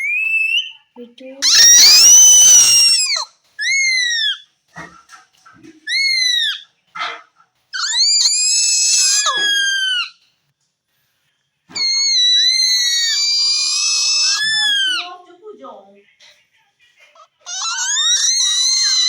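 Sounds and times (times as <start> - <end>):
parakeet high-pitched calls: 0.0 - 4.4, 5.9 - 6.6, 7.8 - 10.2, 11.7 - 15.1, 17.4 - 19.0
parakeet harsh squawk: 0.0 - 5.0, 5.9 - 7.2, 7.8 - 10.2, 11.7 - 15.1, 17.4 - 19.0.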